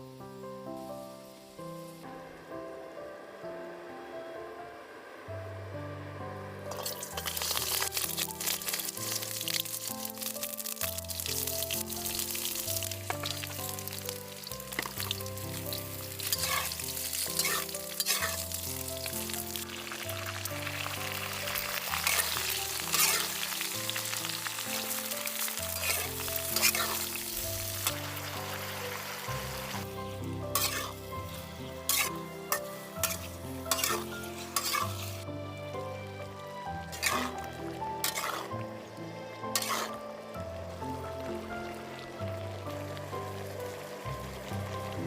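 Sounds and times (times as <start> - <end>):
background music with sustained notes: 0.0 - 45.0
food sizzling while stir-fried: 1.0 - 2.1, 6.7 - 45.0
scraping strokes of stirring: 6.7 - 29.9, 30.5 - 35.2, 36.8 - 38.6, 39.5 - 40.0
sharp scraping stroke: 38.0 - 38.5.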